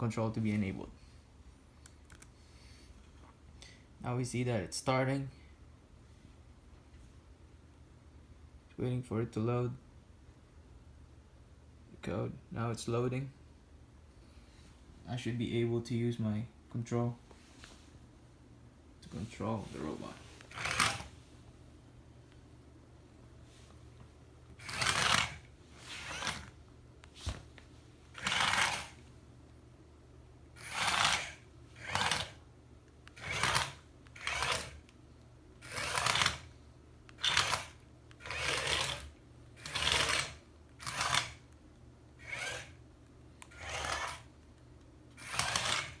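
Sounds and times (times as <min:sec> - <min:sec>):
small gear motors whirring: 0:20.4 - 0:21.1, 0:24.6 - 0:26.6, 0:28.1 - 0:29.0, 0:30.6 - 0:32.4, 0:33.1 - 0:34.9, 0:35.6 - 0:36.5, 0:37.2 - 0:41.4, 0:42.2 - 0:42.8, 0:43.4 - 0:44.3, 0:45.2 - 0:46.0.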